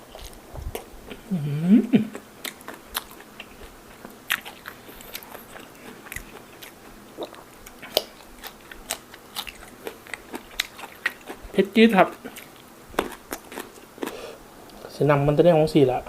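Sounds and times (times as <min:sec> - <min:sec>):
person chewing wetly: 0:00.0 - 0:01.4, 0:02.0 - 0:14.8.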